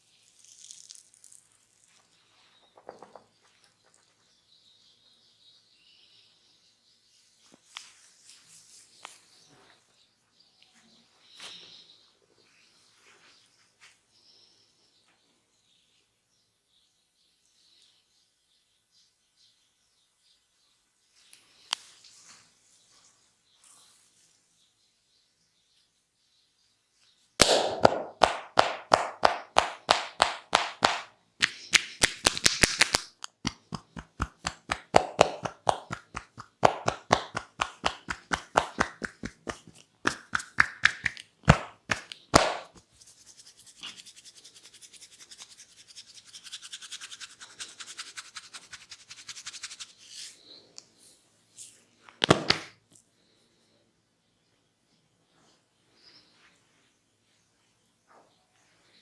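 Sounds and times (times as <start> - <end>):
hands rubbing hair: 0.3 - 2.1, 27.4 - 50.4
hands slapping head: 27.4 - 42.9, 52.2 - 52.8.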